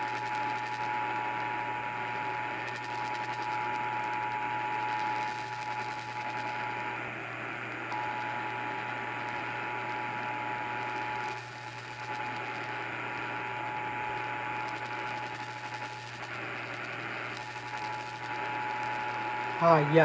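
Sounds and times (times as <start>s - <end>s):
radio static: 19.6s - 20.0s.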